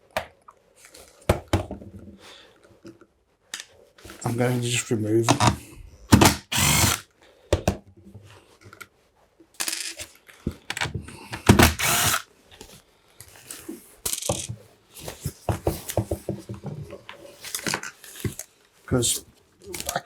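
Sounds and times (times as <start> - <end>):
screwdriver turning screws: 6.1 - 7.0, 11.4 - 12.2.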